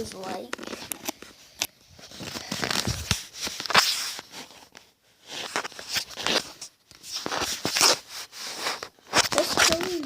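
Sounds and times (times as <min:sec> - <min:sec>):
rustling and handling noise: 0:00.0 - 0:10.0.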